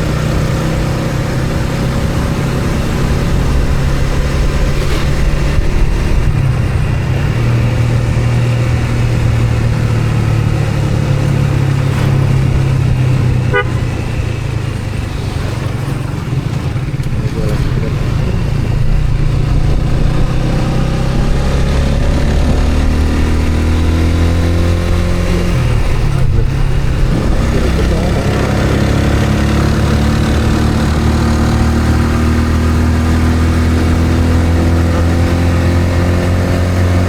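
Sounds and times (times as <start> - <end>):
engine and road drone: 0.0 - 37.0
horn beep: 13.4 - 14.4.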